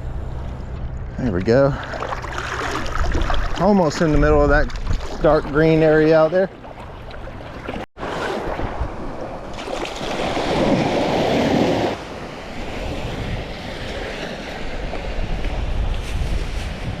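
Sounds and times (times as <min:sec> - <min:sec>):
wind buffeting microphone: 0:02.7 - 0:06.5, 0:10.2 - 0:17.0
surf washing onto beach: 0:08.0 - 0:17.0.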